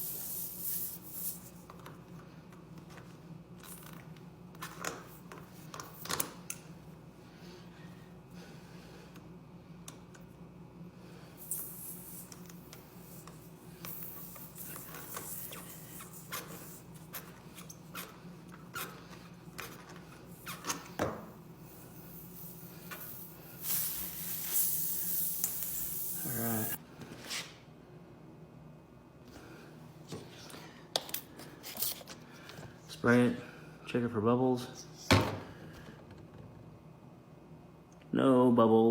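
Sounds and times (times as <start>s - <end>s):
air hissing: 0.0s - 1.6s, 11.2s - 18.2s, 20.2s - 26.8s.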